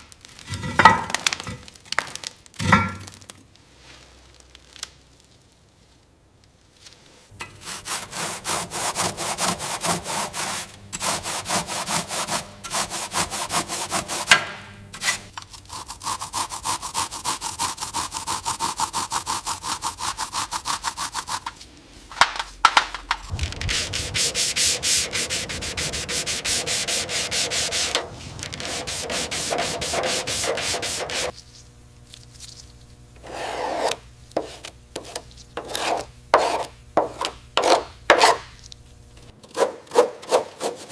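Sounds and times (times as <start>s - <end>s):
hand sanding back and forth: 7.4s - 21.6s, 23.6s - 31.4s, 33.2s - 38.4s, 39.6s - 40.9s.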